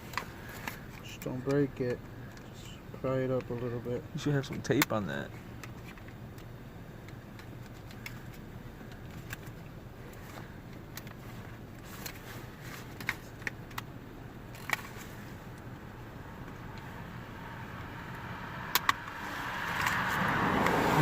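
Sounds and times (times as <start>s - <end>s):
steady low hum: 0.0s - 21.0s
plastic clips snapping: 18.7s - 19.2s.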